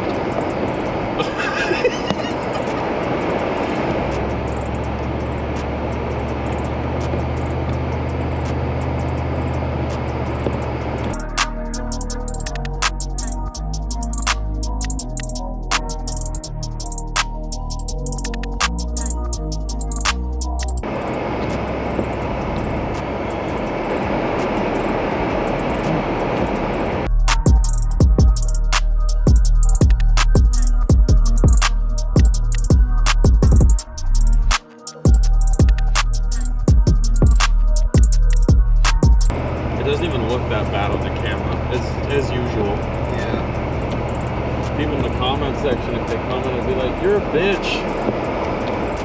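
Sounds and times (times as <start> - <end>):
car engine and tyres on snow: 0.0 - 11.2, 20.8 - 27.1, 39.3 - 49.0
sharp ticks: 0.0 - 26.0, 27.0 - 49.0
music: 1.2 - 20.9, 27.0 - 49.0.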